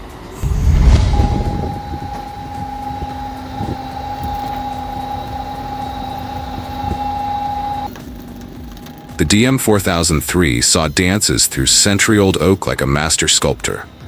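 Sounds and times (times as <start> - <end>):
machine whining: 0.0 - 14.0
low hum: 0.4 - 8.0.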